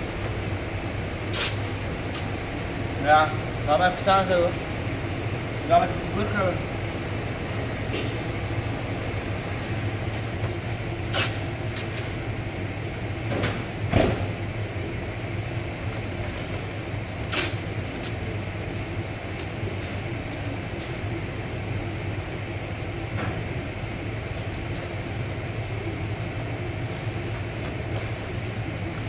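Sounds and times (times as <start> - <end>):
low hum of workshop machinery: 0.0 - 29.0
short hiss: 1.3 - 1.6, 11.1 - 11.4, 17.2 - 17.6.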